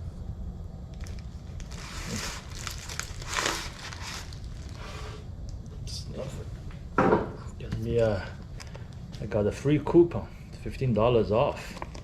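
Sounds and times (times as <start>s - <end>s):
packaging rustling and crinkling: 0.9s - 5.2s, 11.6s - 12.0s.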